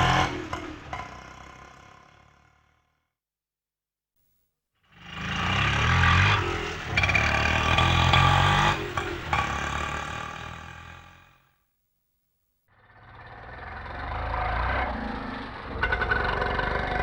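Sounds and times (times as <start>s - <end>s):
auto rickshaw engine revving: 0.0s - 2.9s, 4.9s - 11.5s, 12.9s - 17.0s.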